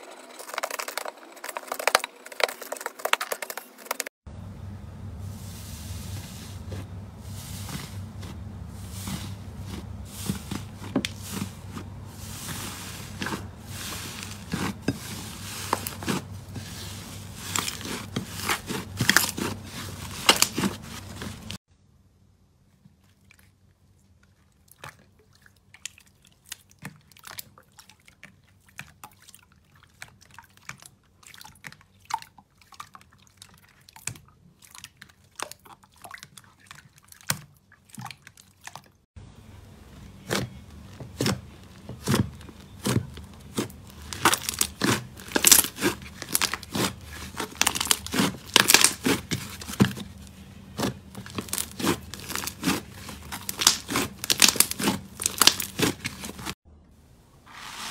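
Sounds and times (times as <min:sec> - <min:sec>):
slime crackling and popping: 0:43.5 - 0:49.3, 0:50.8 - 0:56.5.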